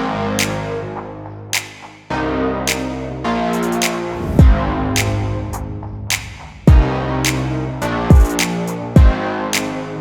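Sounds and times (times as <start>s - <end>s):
synth bass notes: 0.0s - 10.0s
deep kick drum: 4.4s - 7.0s, 8.1s - 8.3s, 9.0s - 9.2s.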